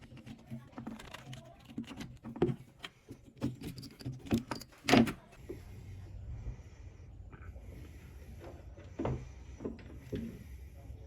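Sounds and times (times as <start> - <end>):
tool parts clicking and knocking: 0.0 - 5.2.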